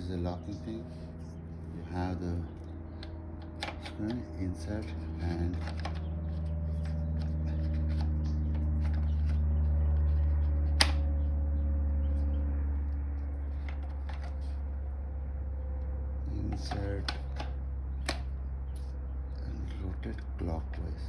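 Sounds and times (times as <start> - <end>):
steady low hum: 0.0 - 21.0
sharp plastic click: 10.7 - 11.1, 16.5 - 18.3.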